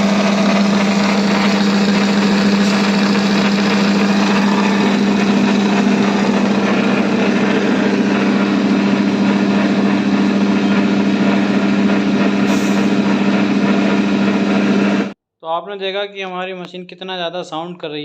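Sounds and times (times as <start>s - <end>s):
harsh mechanical noise: 0.0s - 15.2s
machine hum: 0.0s - 15.2s.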